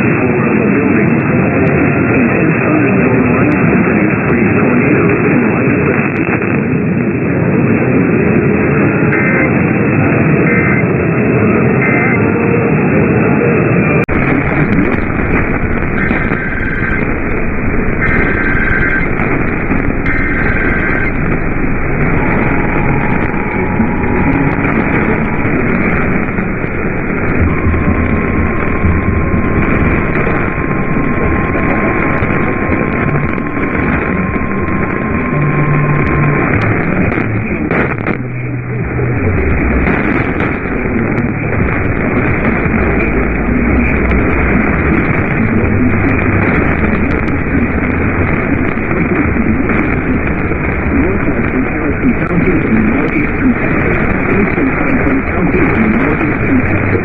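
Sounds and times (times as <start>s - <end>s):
radio static hiss: 0.0s - 57.0s
data tone bursts: 11.7s - 12.2s, 14.1s - 57.0s.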